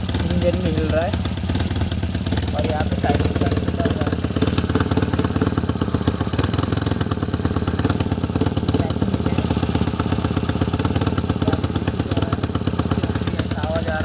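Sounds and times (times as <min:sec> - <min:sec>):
small engine idling roughly: 0:00.0 - 0:14.0.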